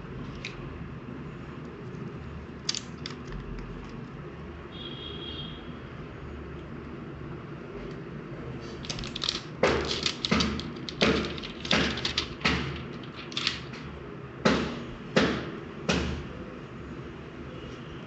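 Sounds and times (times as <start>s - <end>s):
unboxing handling clicks and crackles: 2.6s - 4.1s, 8.8s - 13.9s.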